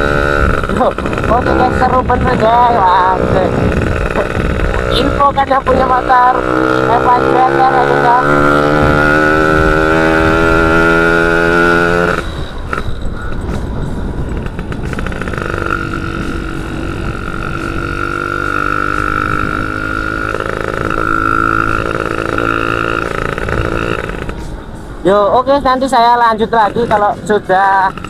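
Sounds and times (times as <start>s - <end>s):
two-stroke motorcycle engine: 0.0s - 13.5s, 14.2s - 24.5s, 26.5s - 28.0s.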